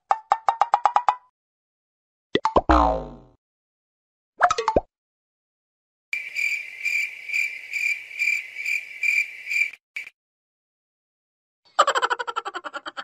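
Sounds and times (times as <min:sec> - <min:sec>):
springy bounce effect: 0:02.4 - 0:03.4
cricket chirping effect: 0:06.2 - 0:10.1.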